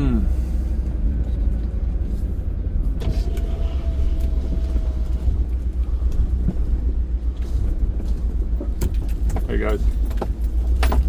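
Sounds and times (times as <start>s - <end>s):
truck engine and road rumble: 0.0s - 11.0s
faint whine: 2.9s - 8.4s.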